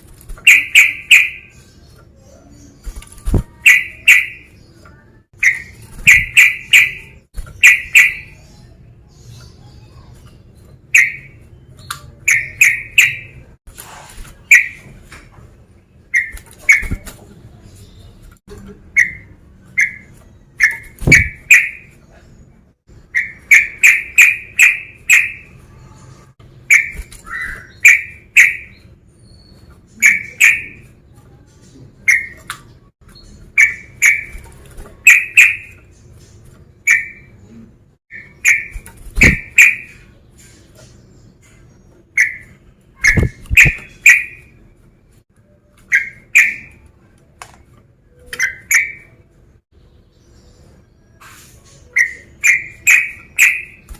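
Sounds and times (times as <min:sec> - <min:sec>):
bird chip notes: 0:00.4 - 0:01.7, 0:03.2 - 0:08.9, 0:45.6 - 0:46.9.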